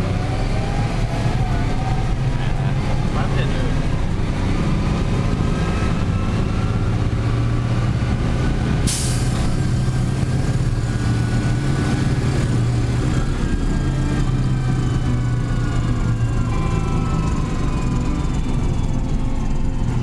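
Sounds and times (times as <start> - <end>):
tractor diesel engine droning: 0.0 - 20.0
air hissing: 8.9 - 10.0.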